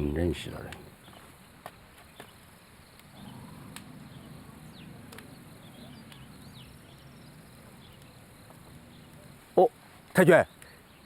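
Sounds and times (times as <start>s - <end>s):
faint clicks: 1.6s - 3.9s, 5.0s - 5.4s, 6.0s - 6.3s, 7.9s - 9.3s, 10.5s - 10.8s.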